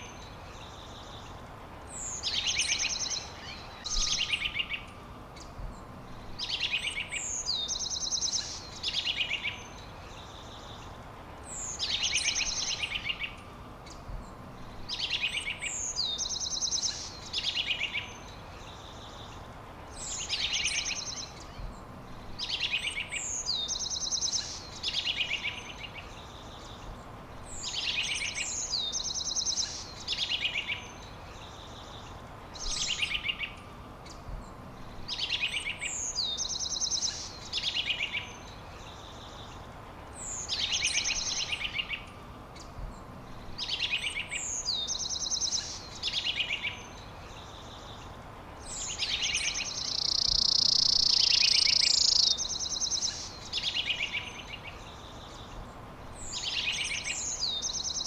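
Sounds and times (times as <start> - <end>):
steady background hiss: 0.0 - 58.0
songbird whistling and trilling: 2.0 - 4.9, 22.4 - 25.7, 35.1 - 38.3, 43.5 - 46.9, 48.7 - 54.7, 56.2 - 58.0.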